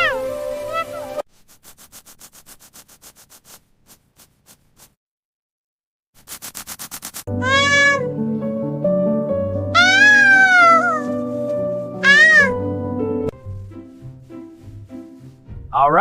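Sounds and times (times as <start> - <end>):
background music: 0.0 - 1.2, 7.3 - 16.0
cat meowing: 0.0 - 1.2, 7.3 - 8.2, 9.7 - 11.2, 12.0 - 12.6
rapid run of clicks: 6.2 - 7.3.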